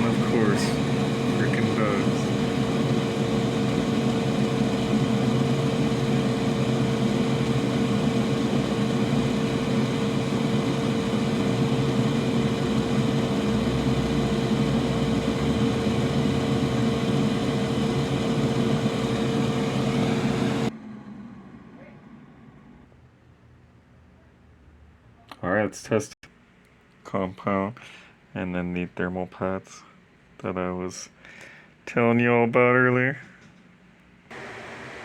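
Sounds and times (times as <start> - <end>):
electric blower motor whirring: 0.0 - 20.8, 34.3 - 35.0.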